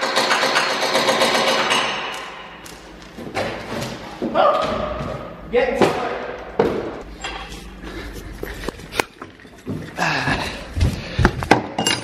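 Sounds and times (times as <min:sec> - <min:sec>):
knocks and clanks of hand work: 0:00.0 - 0:05.2.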